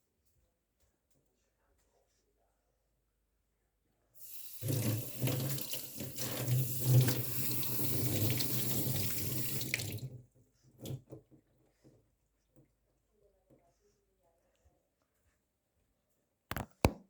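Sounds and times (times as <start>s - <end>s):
water running from a tap: 4.2s - 10.2s.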